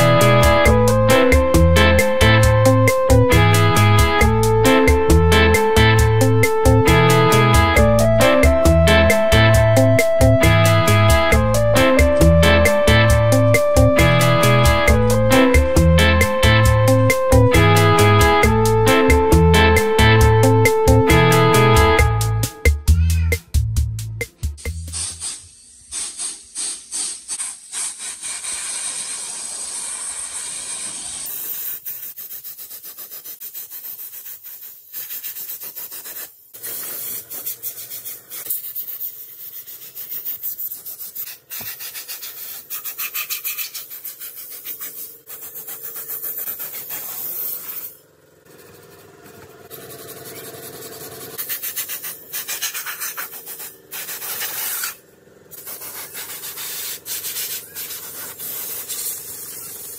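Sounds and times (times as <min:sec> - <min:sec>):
tool scraping rusty metal: 0:34.0 - 0:55.0.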